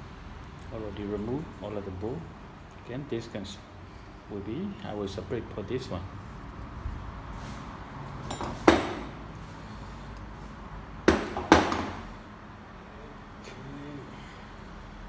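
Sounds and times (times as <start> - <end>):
sharp metal knocks: 8.3 - 9.2, 11.1 - 12.1.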